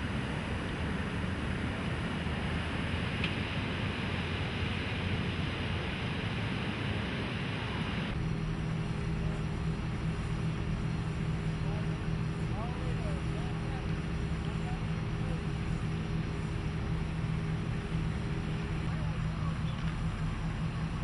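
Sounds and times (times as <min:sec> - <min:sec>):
low hum with held tone: 0:00.0 - 0:21.0.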